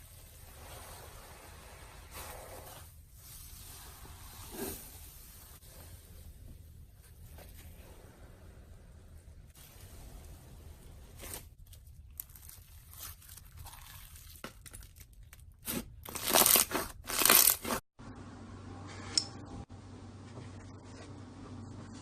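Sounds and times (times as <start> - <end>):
slime crackling and tearing: 11.7 - 17.8.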